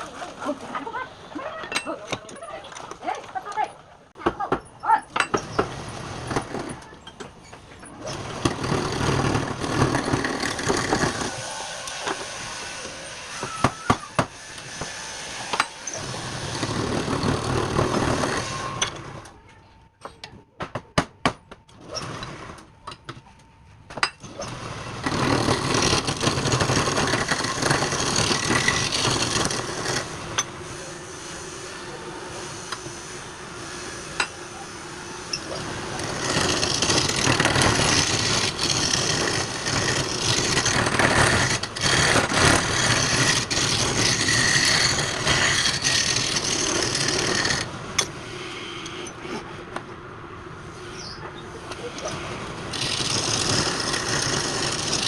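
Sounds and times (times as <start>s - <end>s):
lathe tool cutting wood: 8.1s - 18.9s, 24.4s - 30.4s, 35.4s - 47.7s, 52.7s - 55.0s.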